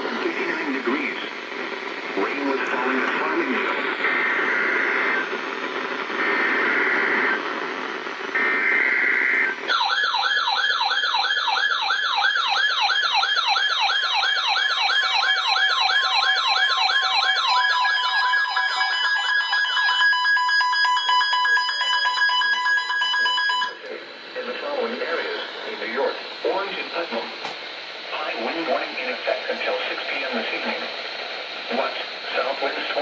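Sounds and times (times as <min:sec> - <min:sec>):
radio hiss: 0:00.0 - 0:09.7, 0:23.2 - 0:33.0
warbling siren-like alert tone: 0:09.7 - 0:23.8.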